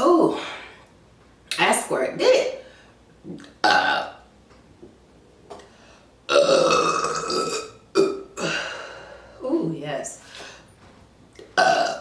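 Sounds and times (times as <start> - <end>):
loud burps: 3.6 - 4.2, 6.3 - 8.7, 11.5 - 12.0.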